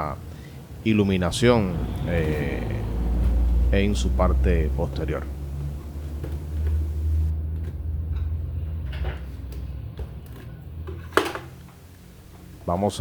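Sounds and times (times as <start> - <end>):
steady low hum: 0.0 - 8.8.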